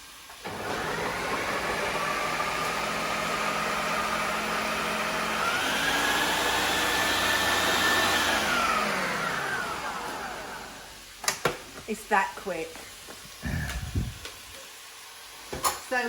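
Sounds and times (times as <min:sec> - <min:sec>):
food processor chopping vegetables: 0:00.4 - 0:10.9.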